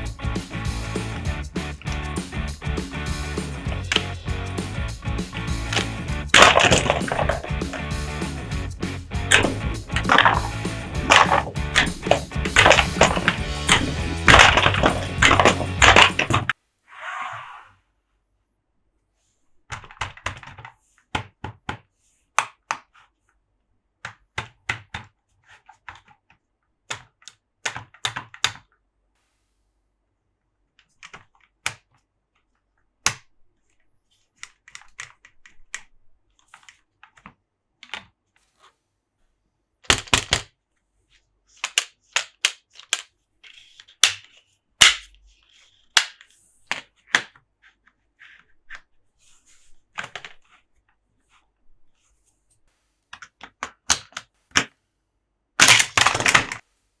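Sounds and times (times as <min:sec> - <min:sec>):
plastic toy trucks clicking and knocking: 0:05.7 - 0:07.8, 0:09.3 - 0:16.6, 0:19.7 - 0:23.1, 0:24.0 - 0:28.8, 0:30.8 - 0:32.0, 0:33.0 - 0:33.3, 0:34.4 - 0:38.2, 0:39.8 - 0:40.6, 0:41.5 - 0:47.4, 0:50.0 - 0:50.5, 0:53.1 - 0:54.7, 0:55.6 - 0:56.6.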